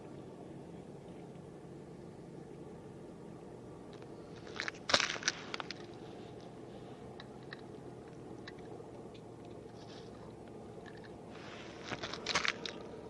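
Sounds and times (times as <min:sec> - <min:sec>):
low background noise: 0:00.0 - 0:13.0
crunching: 0:03.9 - 0:13.0.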